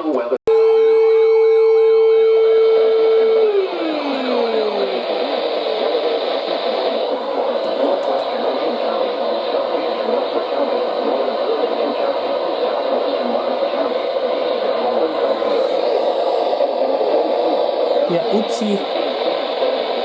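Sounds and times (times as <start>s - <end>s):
radio static hissing: 4.6s - 20.0s.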